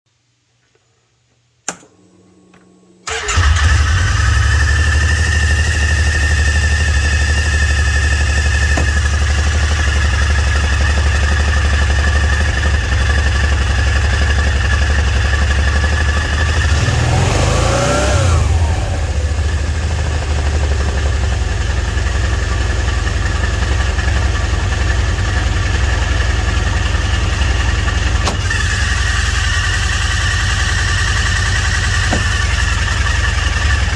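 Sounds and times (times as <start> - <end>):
engine idling and revving: 3.1 - 33.9.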